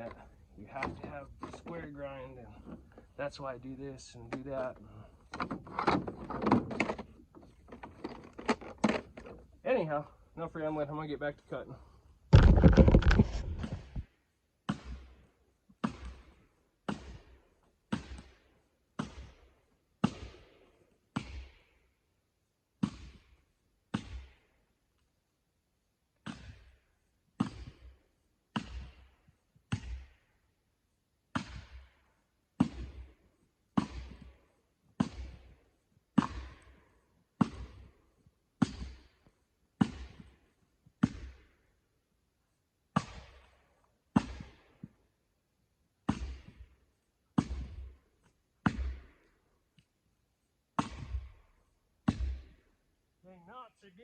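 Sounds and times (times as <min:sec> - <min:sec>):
axe strikes splitting wood: 0:14.7 - 0:15.2, 0:16.9 - 0:20.6, 0:31.3 - 0:32.0, 0:33.8 - 0:34.4, 0:35.0 - 0:35.6, 0:36.2 - 0:36.8, 0:37.4 - 0:37.9, 0:39.8 - 0:40.4, 0:43.0 - 0:45.0, 0:46.1 - 0:46.8, 0:48.6 - 0:49.2, 0:50.8 - 0:51.4, 0:52.1 - 0:52.6.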